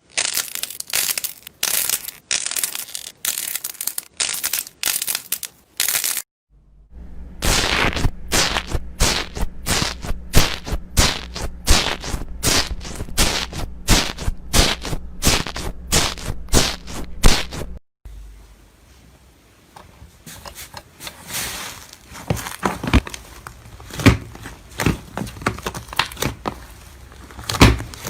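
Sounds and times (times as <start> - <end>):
low steady hum: 6.5 - 28.0.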